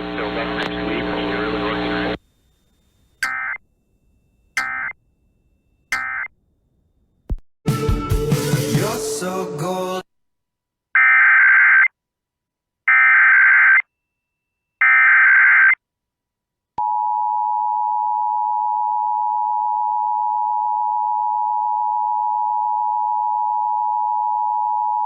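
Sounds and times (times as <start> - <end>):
harsh buzzing data bursts: 2.9 - 3.6
two-tone alert signal: 3.2 - 3.6, 4.6 - 5.0, 6.0 - 6.3.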